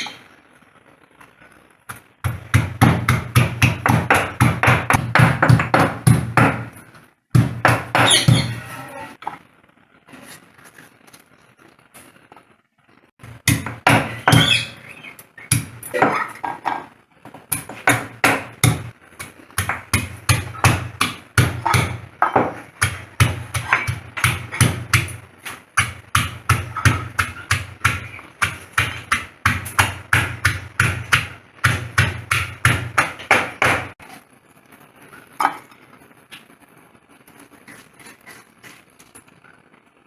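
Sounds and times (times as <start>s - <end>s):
chopping on a hard surface: 2.3s - 6.8s, 15.5s - 34.0s.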